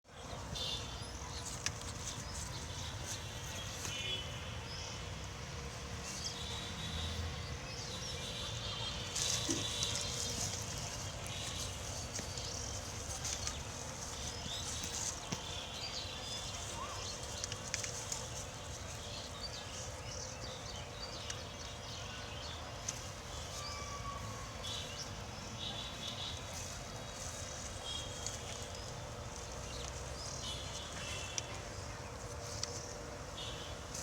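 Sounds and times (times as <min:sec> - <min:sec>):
low background noise: 0:00.1 - 0:34.0.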